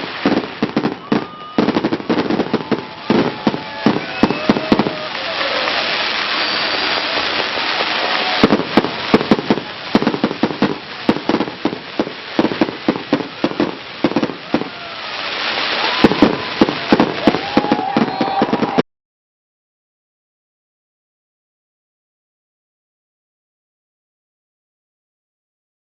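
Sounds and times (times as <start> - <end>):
fireworks bangs: 0.0 - 18.8
fireworks crackling: 0.0 - 18.8
fireworks whistles: 0.0 - 18.8.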